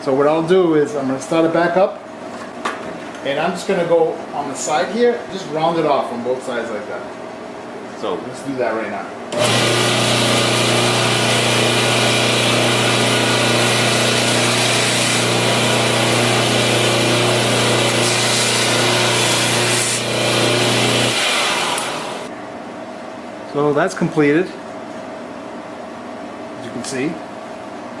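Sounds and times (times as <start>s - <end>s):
belt grinder grinding steel: 9.4s - 22.3s.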